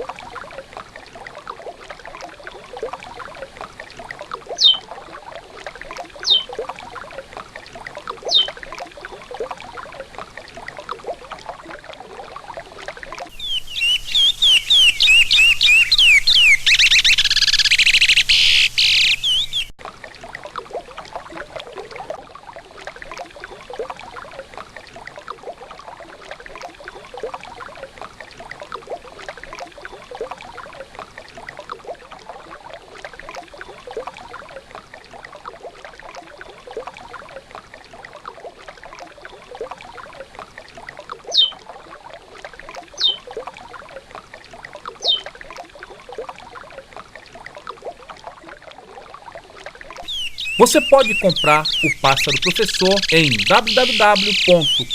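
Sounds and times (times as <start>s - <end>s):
river water babbling: 0.0s - 54.9s
finch singing whistled notes: 4.6s - 4.8s, 6.2s - 6.5s, 8.3s - 8.5s, 13.3s - 19.7s, 41.3s - 41.6s, 43.0s - 43.2s, 45.0s - 45.2s, 50.0s - 54.9s
short high chirps: 50.1s - 54.9s.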